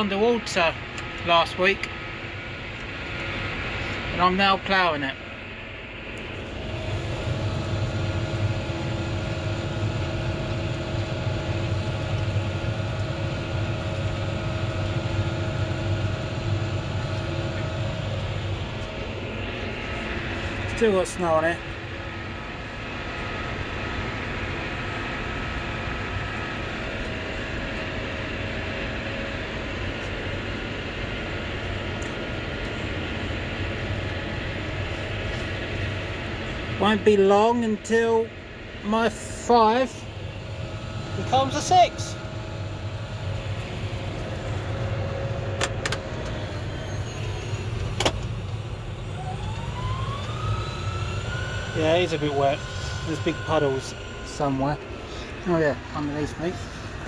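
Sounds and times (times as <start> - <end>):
tractor engine running: 0.0 - 21.8, 38.8 - 57.0
faint steady whine: 0.0 - 57.0.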